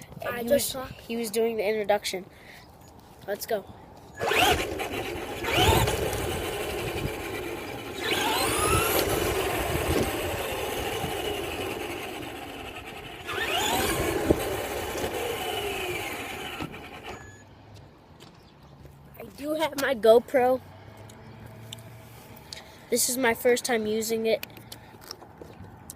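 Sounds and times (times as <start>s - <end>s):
toy car motor whining: 4.2s - 17.4s.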